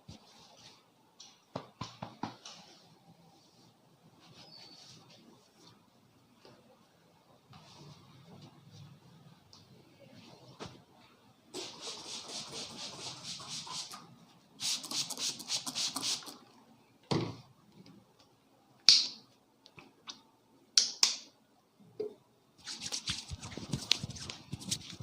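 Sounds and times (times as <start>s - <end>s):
sharp snaps: 18.8s - 19.2s, 20.8s - 21.3s
hands stroking hair and skin: 22.6s - 25.0s.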